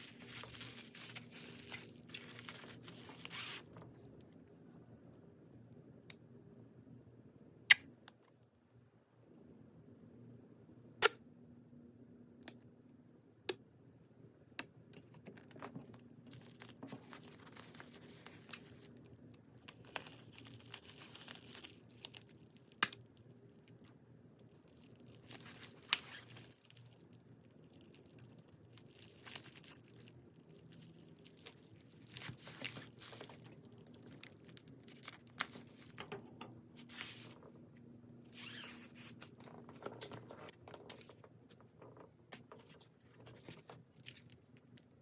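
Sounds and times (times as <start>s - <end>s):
plastic crinkling: 0.0s - 4.2s, 15.2s - 45.0s
faint steady hum: 0.0s - 45.0s.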